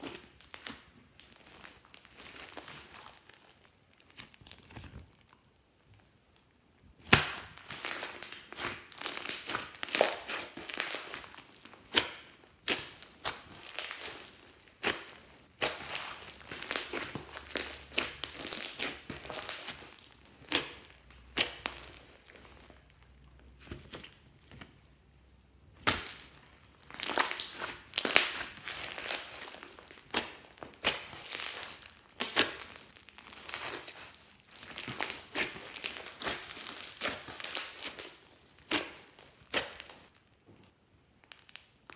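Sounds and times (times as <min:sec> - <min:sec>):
slime clicking and popping: 0:07.0 - 0:23.0, 0:25.8 - 0:40.1.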